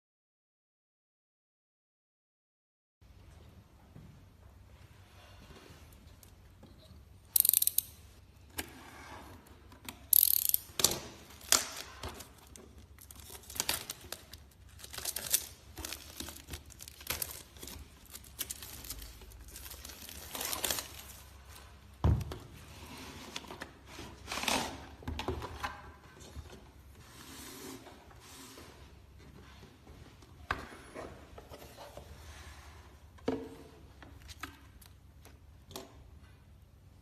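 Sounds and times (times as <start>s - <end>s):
packaging crinkling and rustling: 11.2s - 21.8s.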